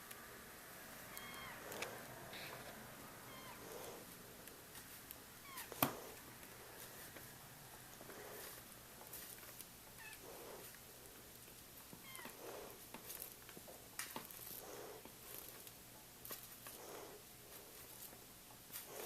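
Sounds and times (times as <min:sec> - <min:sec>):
faint cat meows: 0:01.1 - 0:01.7, 0:03.3 - 0:03.7.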